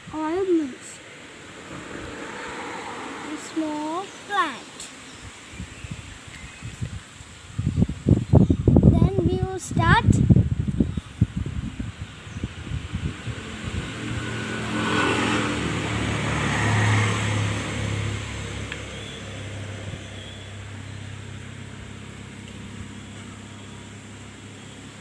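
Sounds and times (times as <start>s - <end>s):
engine hum passing by: 0.0s - 5.9s, 11.4s - 25.0s.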